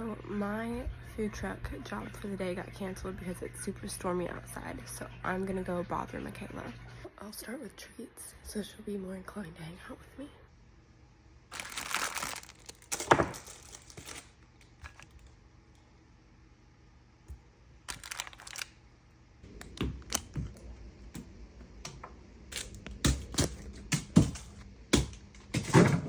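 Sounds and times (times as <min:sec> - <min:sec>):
rustling: 0:11.5 - 0:15.1.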